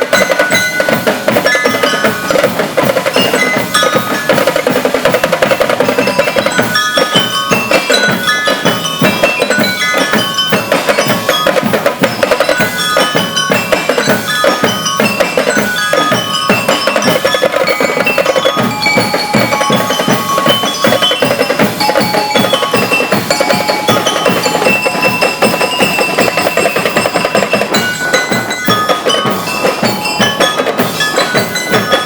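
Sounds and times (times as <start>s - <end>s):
bell lyres playing melody: 0.0s - 32.0s
marching drums: 0.0s - 32.0s.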